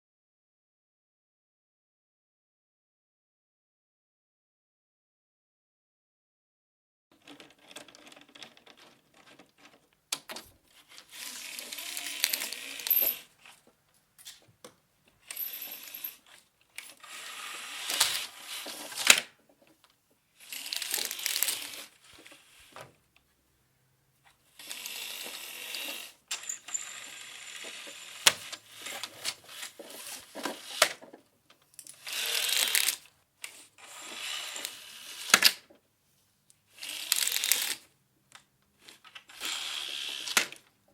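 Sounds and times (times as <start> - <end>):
blinds clicking: 7.4 - 13.6, 15.3 - 19.7, 20.4 - 22.9, 24.6 - 31.2, 31.9 - 35.6, 36.8 - 37.8
window blinds rattling: 10.4 - 13.3, 16.8 - 19.2, 20.4 - 22.6, 24.6 - 31.1, 32.0 - 33.0, 36.8 - 37.8.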